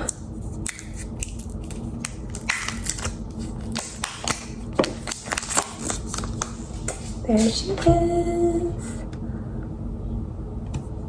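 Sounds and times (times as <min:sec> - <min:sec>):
paper rustling: 0:00.5 - 0:07.7.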